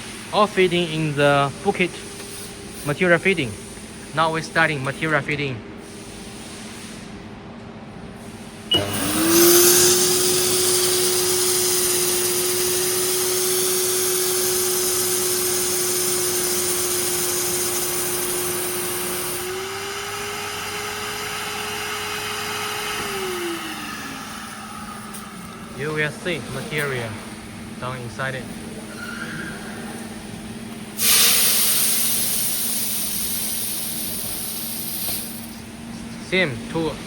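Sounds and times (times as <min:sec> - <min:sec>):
blower motor whine with airy hiss: 0:08.2 - 0:37.0.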